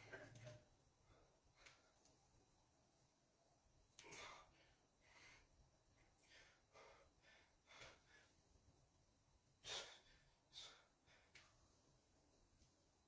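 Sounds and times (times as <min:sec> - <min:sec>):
man breathing quickly: 0:04.1 - 0:08.6, 0:09.6 - 0:11.8.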